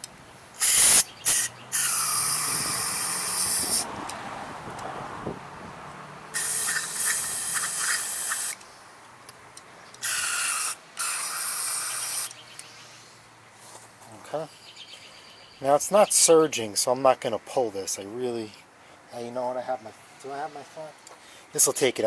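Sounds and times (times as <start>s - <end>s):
aerosol spray hissing: 0.6s - 3.8s, 6.4s - 8.6s, 10.0s - 12.3s.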